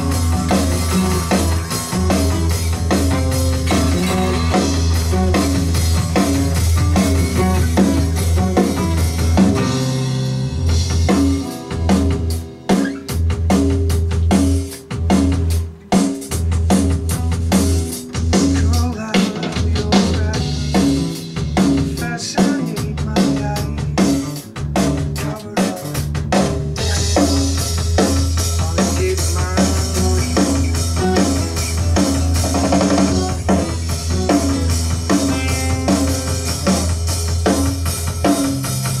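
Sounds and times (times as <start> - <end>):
band music with drum kit: 0.0 - 39.0.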